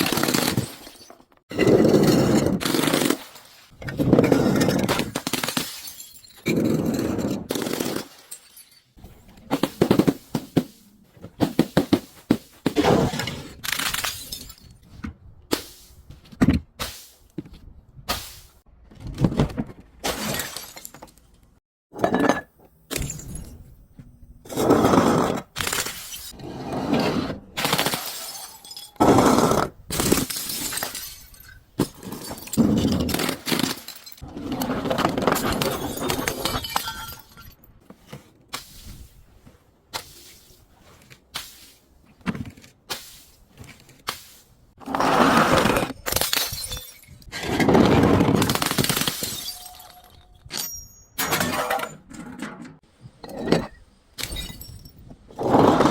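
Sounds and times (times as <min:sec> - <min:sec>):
glass bottles smashing: 0:00.0 - 0:01.3, 0:04.3 - 0:09.0, 0:13.7 - 0:14.8, 0:20.1 - 0:21.1, 0:27.6 - 0:29.3, 0:29.9 - 0:34.2, 0:35.1 - 0:37.7, 0:45.9 - 0:47.3, 0:48.4 - 0:51.9, 0:53.6 - 0:55.1.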